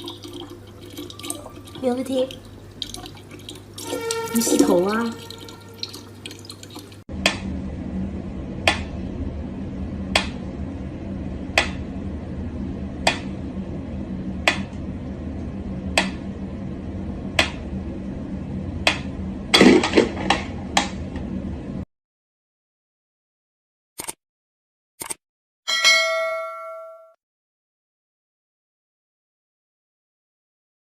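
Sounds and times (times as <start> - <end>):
steady low hum: 0.0 - 21.9
sharp clicks: 24.0 - 24.2.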